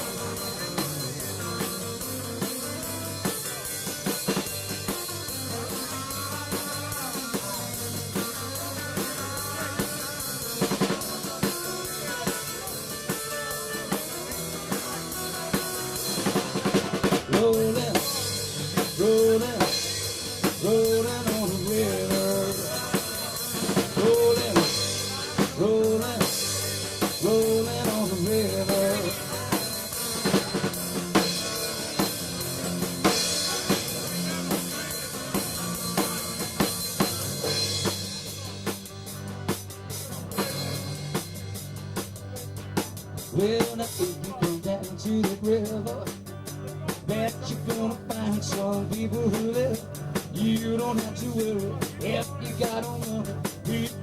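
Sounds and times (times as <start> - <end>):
drum kit beat: 0.0 - 54.0
instrumental rock music: 0.0 - 54.0
riff notes: 0.0 - 54.0.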